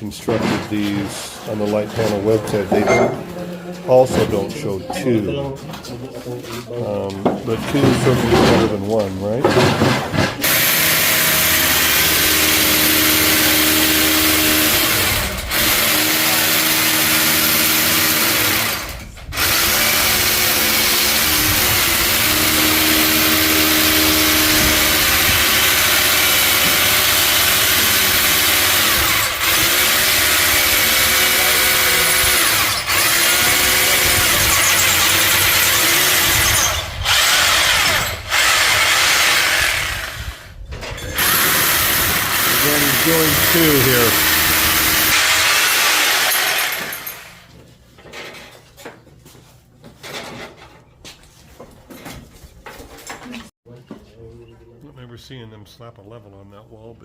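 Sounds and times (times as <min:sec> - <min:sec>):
electric power drill running: 0:10.4 - 0:40.5, 0:41.2 - 0:47.5.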